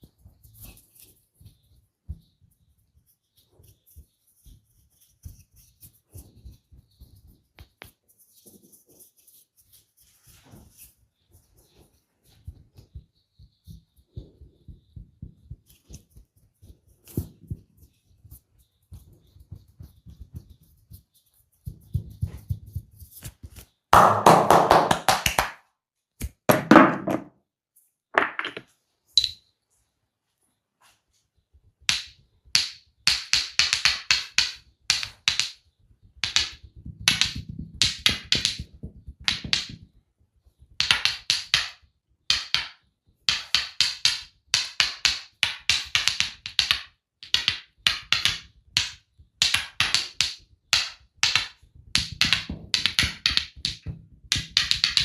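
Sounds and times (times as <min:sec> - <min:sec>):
tapping and slapping on body: 0:24.0 - 0:25.6, 0:36.2 - 0:40.0.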